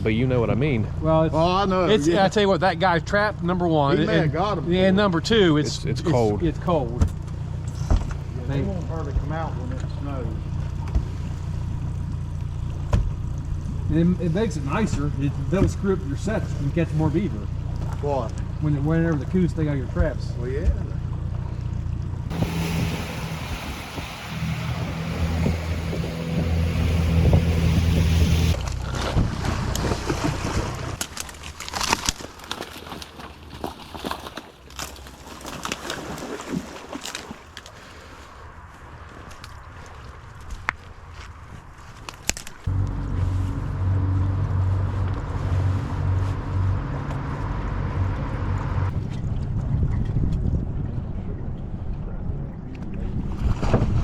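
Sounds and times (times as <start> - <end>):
boat motor running: 0.0 - 31.3, 42.7 - 53.3
wind hiss on microphone: 22.3 - 28.6
wind noise: 22.3 - 31.0, 42.7 - 54.0.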